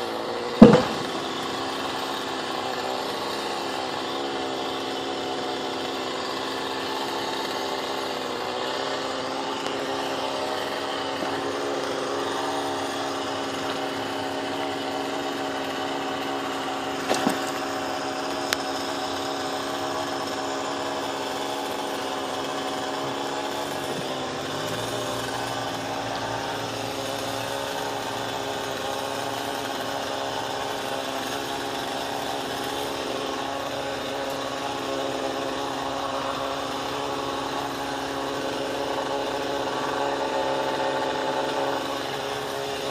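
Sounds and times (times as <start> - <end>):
chainsaw engine running: 0.0 - 42.9
sharp knocks: 0.6 - 1.5.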